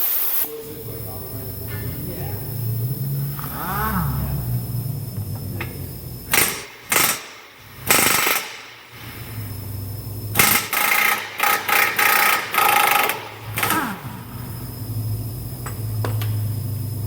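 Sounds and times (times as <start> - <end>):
pneumatic impact wrench hammering: 5.1 - 14.8, 15.6 - 16.5.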